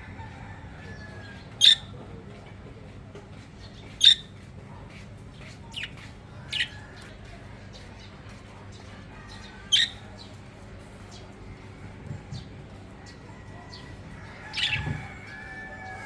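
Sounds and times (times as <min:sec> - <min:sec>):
budgerigars chirping and squawking: 0:01.0 - 0:02.0, 0:03.3 - 0:11.2, 0:13.0 - 0:16.0.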